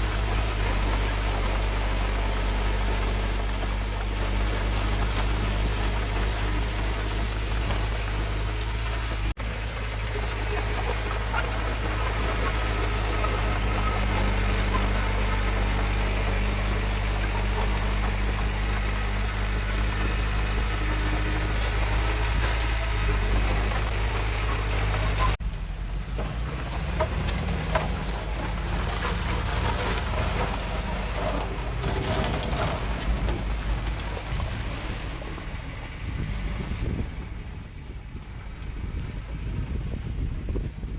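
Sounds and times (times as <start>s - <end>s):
metal knocks and clanks: 0.0s - 9.4s, 26.2s - 35.6s
heavy diesel machinery engine: 0.0s - 40.9s.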